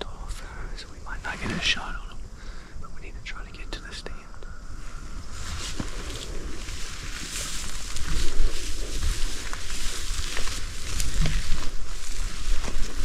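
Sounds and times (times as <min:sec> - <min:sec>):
low rumble of wind: 0:00.0 - 0:13.0
rustling: 0:04.8 - 0:13.0.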